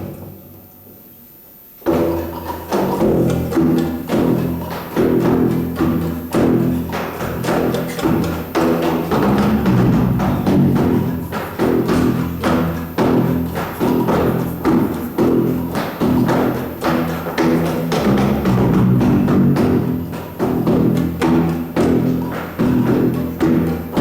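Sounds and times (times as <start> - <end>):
percussion beat: 1.8 - 24.0
sustained low tones: 9.1 - 13.9, 17.9 - 24.0.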